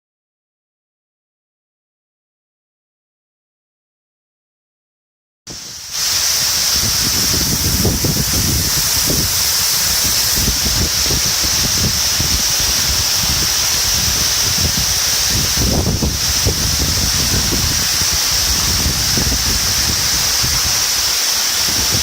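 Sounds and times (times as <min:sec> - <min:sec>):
waterfall rushing: 0:05.5 - 0:22.0.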